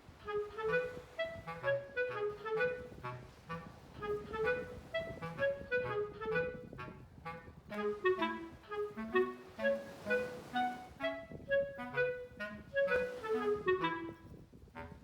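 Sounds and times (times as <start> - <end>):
light bouncy background music: 7.8 - 14.2.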